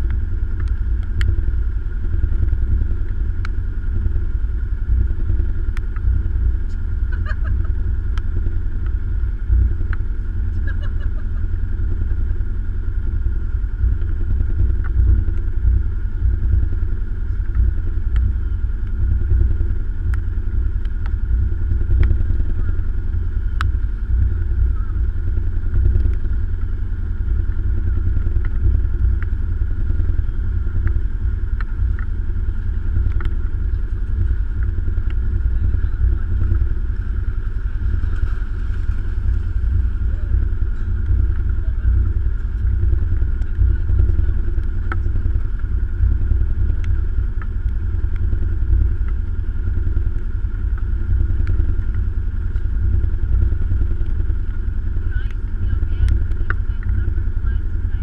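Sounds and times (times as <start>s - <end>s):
engine clicks and knocks: 0.0s - 58.0s
engine running: 0.0s - 58.0s.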